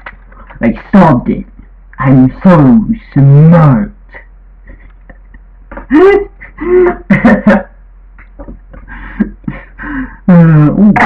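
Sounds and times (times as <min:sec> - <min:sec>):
faint clicks and murmurs: 0:00.0 - 0:02.1, 0:04.1 - 0:05.9, 0:08.1 - 0:09.7
man's wordless vocal cries: 0:05.8 - 0:07.1.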